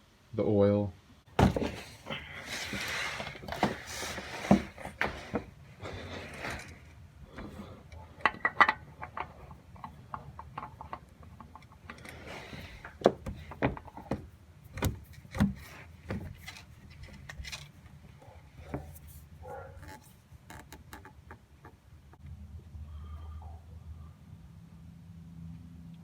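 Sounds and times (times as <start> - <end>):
knocks and clicks of parts: 8.2 - 17.7.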